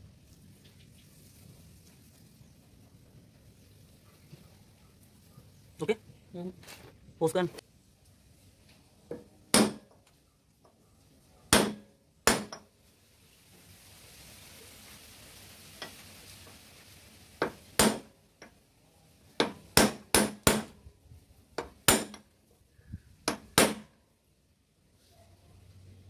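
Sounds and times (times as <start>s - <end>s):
hammer striking metal: 9.1s - 10.0s, 11.5s - 12.6s, 17.4s - 18.1s, 19.4s - 20.7s, 21.6s - 22.2s, 23.3s - 23.9s.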